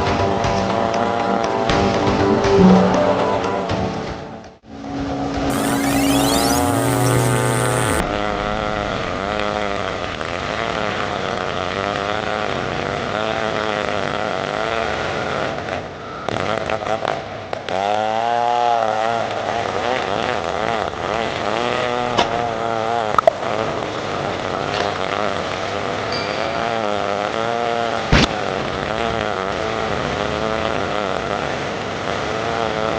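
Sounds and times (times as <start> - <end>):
chainsaw cutting hard wood: 5.5 - 8.0.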